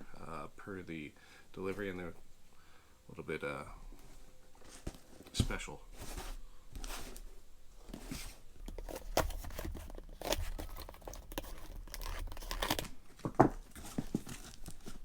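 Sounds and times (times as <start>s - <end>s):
packaging tearing and crinkling: 8.6s - 15.0s.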